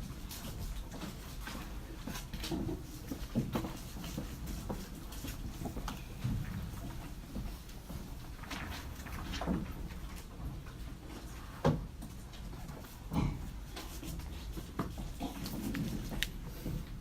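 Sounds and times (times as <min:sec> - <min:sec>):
soft knocks and shuffles: 0:00.0 - 0:17.0.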